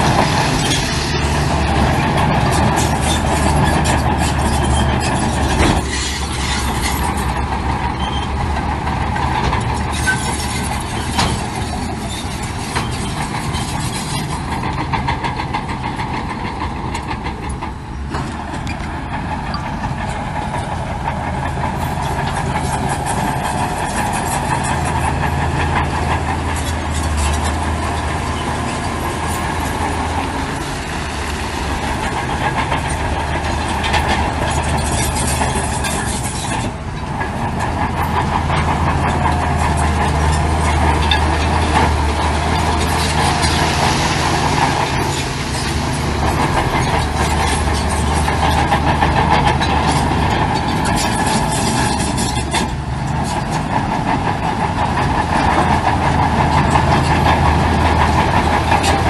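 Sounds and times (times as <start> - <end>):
heavy diesel machinery running: 0.0 - 59.0.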